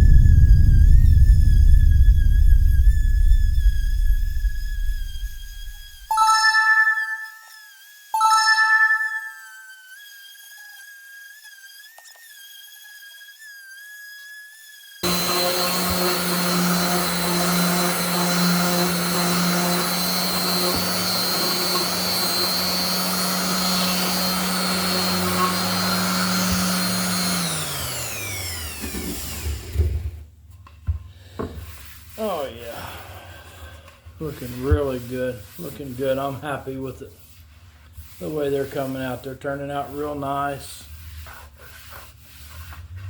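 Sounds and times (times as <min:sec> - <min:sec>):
electric wood sander running: 0:00.0 - 0:06.1, 0:15.0 - 0:30.0.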